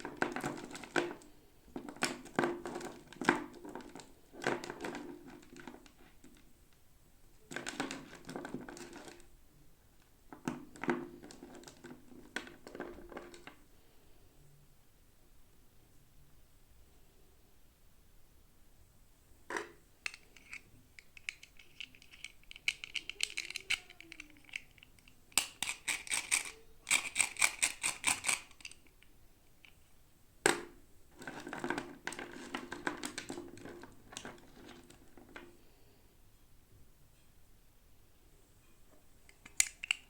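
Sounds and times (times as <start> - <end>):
sharp clicks or snaps: 20.0 - 29.0, 39.3 - 40.0
packaging crackling and scratching: 21.2 - 28.9.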